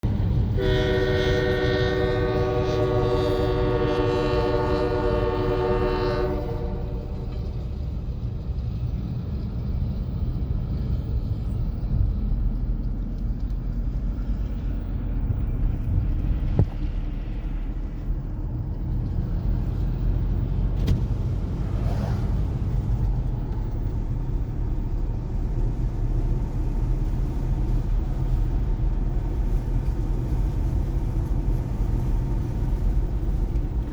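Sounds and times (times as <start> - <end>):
train rumbling over crossing: 0.0 - 33.9
locomotive horn: 0.4 - 7.7.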